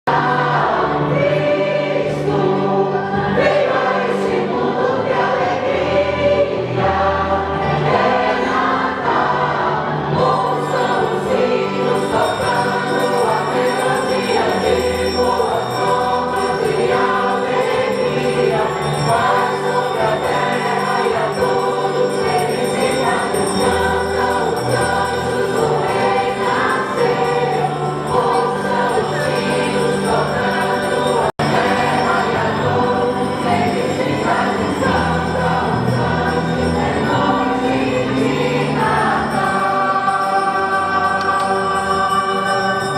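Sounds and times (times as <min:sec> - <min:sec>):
choir singing with accompaniment: 0:00.1 - 0:42.9
high ringing bell tones: 0:10.2 - 0:42.9.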